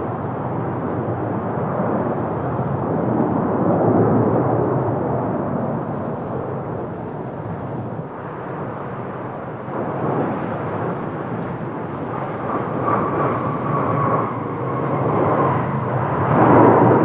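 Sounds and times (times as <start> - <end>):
faint engine whine: 0.0 - 17.0
jet engine rushing: 0.0 - 17.0.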